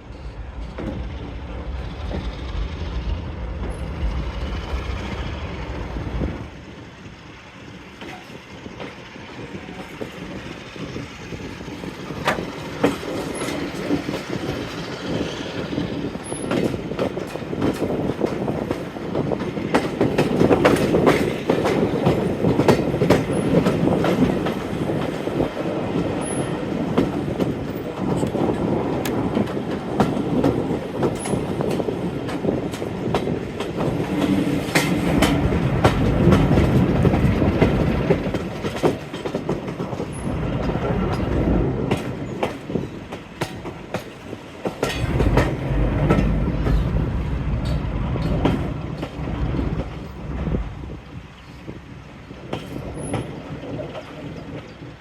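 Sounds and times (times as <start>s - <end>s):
low rumble: 0.0s - 6.5s, 45.0s - 51.1s
train wheels clicking over rail joints: 0.0s - 55.0s.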